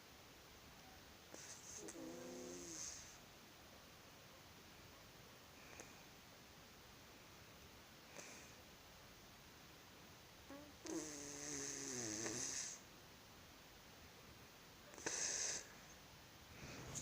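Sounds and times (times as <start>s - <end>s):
woman snoring: 1.4s - 3.2s, 10.5s - 12.8s, 15.0s - 15.7s.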